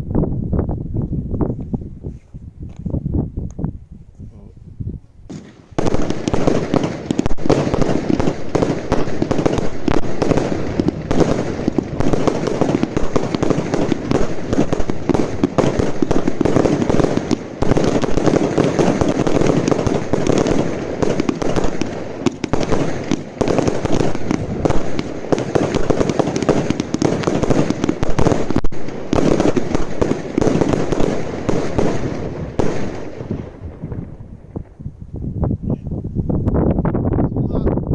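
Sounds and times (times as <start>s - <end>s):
fireworks bangs and crackling: 5.3s - 34.8s.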